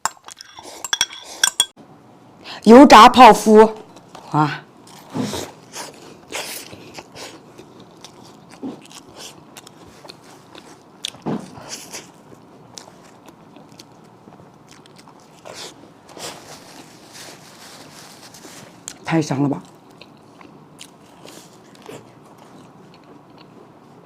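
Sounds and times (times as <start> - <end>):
crisp crunching while chewing: 4.8 - 23.6.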